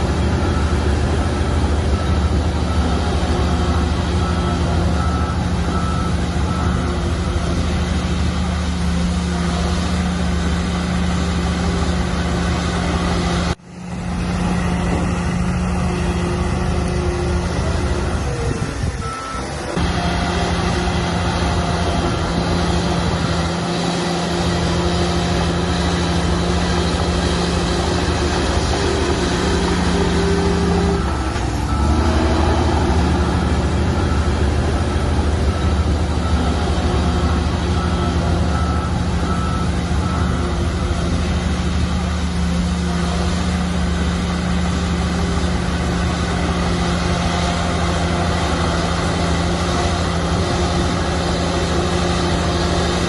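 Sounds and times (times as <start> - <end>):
bulldozer diesel engine running: 0.0 - 53.0
back-up alarm beeps: 0.1 - 7.8, 28.0 - 41.4.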